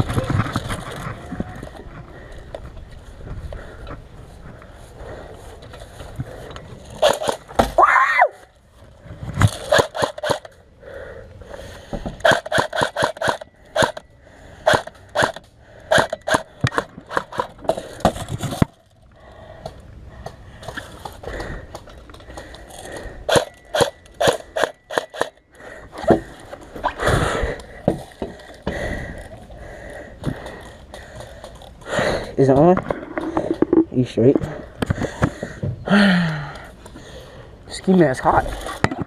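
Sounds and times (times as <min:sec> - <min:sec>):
airsoft guns firing: 0:07.0 - 0:07.4, 0:09.4 - 0:10.5, 0:12.2 - 0:14.0, 0:14.6 - 0:17.4, 0:23.3 - 0:25.3.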